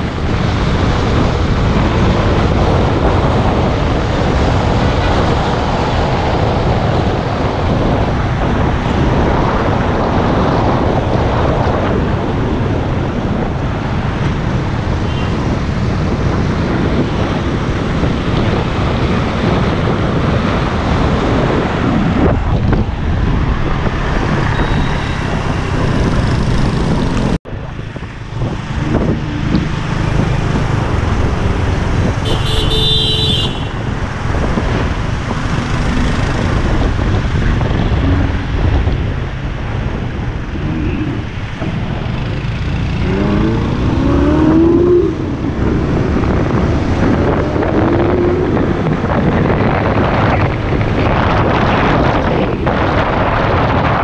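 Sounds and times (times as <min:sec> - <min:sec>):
street traffic: 0:00.0 - 0:54.0
supercar engines revving: 0:33.8 - 0:54.0.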